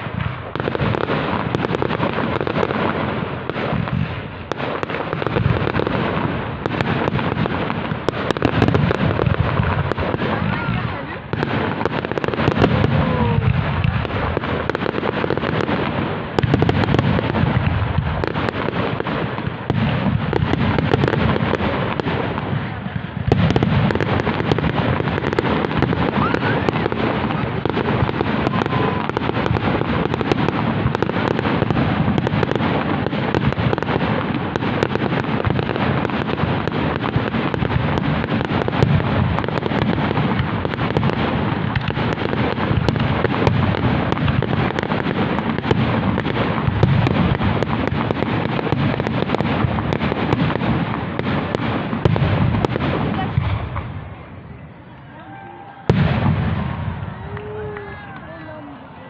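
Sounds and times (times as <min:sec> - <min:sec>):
fireworks bangs and crackling: 0:00.0 - 0:59.0
firework whistles: 0:25.6 - 0:30.3.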